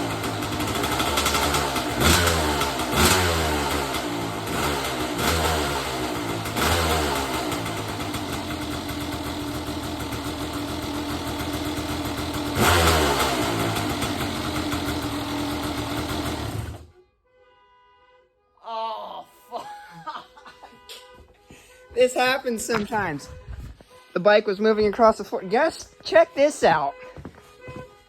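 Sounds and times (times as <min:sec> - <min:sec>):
dirt bike engine idling and revving: 0:00.0 - 0:16.9.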